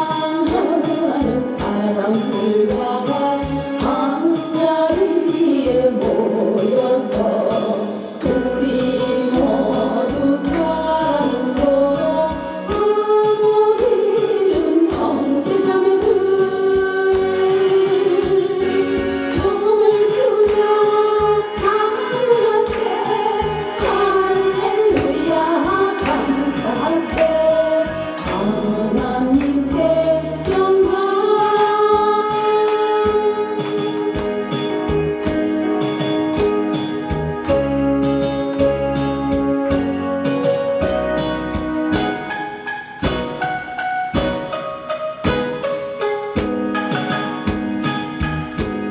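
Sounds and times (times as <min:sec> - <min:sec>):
instrumental accompaniment with beat: 0:00.0 - 0:48.9
group singing gospel song: 0:21.5 - 0:32.0.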